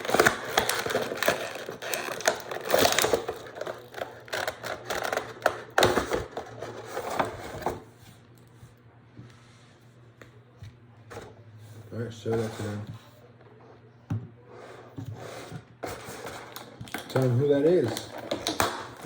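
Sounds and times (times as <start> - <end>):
plastic packaging crackling: 0.0 - 7.2, 16.5 - 19.0.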